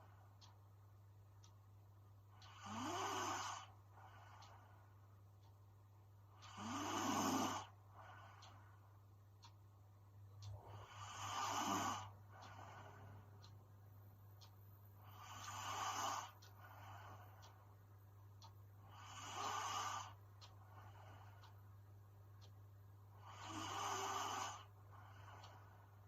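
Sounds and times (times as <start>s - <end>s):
woman snoring: 2.5s - 3.7s, 6.5s - 7.7s, 10.6s - 12.9s, 15.1s - 16.4s, 18.9s - 20.2s, 23.2s - 24.7s
soft breath out: 10.5s - 13.5s.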